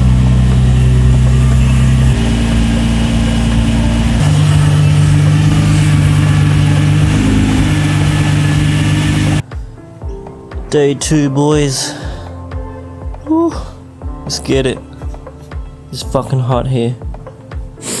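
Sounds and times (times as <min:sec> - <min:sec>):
deep sustained synth chords: 0:00.0 - 0:09.4.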